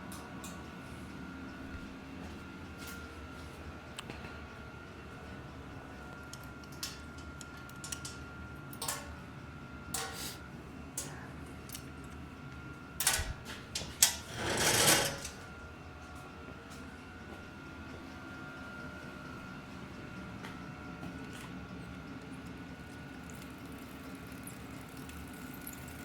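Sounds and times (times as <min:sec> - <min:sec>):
bike chain clicking and rattling: 0:13.0 - 0:15.4, 0:22.8 - 0:26.0.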